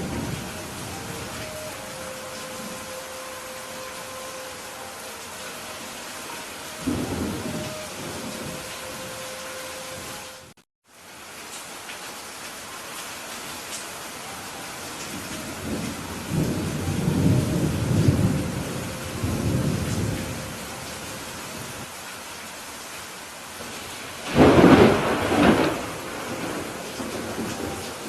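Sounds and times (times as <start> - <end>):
thunder rumbling: 0.0 - 4.8, 6.2 - 10.5, 15.1 - 21.8, 24.2 - 28.0
steady rain: 0.0 - 28.0
sharp thunderclap: 24.2 - 27.6.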